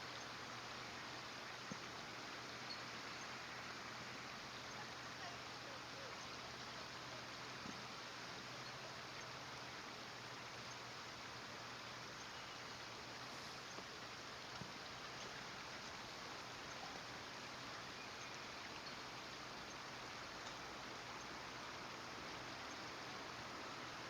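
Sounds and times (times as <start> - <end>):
background hiss: 0.0 - 24.0
faint ticks: 12.1 - 17.1, 17.8 - 23.2.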